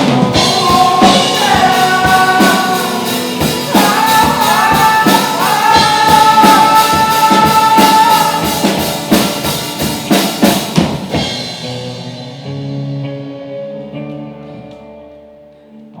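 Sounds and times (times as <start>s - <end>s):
drum hits: 0.0s - 12.2s
guitar and bass chords ringing: 0.0s - 16.0s.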